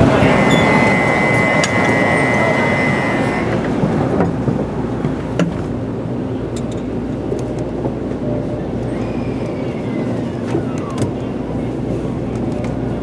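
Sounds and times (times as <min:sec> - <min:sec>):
din of voices: 0:00.0 - 0:03.7
high electronic departure tone: 0:00.0 - 0:03.9
train noise: 0:00.0 - 0:13.0.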